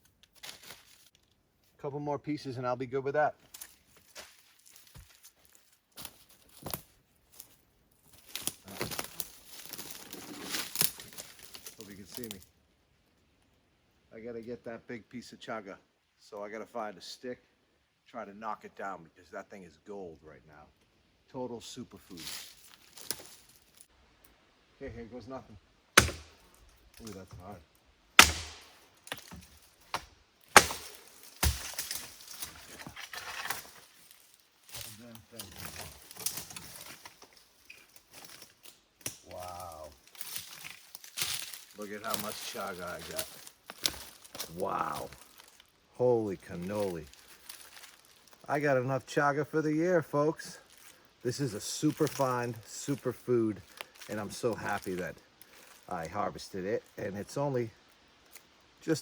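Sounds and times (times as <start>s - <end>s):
branches rustling and crackling: 0.0s - 1.8s, 3.3s - 14.5s, 20.7s - 59.0s
wooden stick knocking on tree: 26.0s - 26.5s.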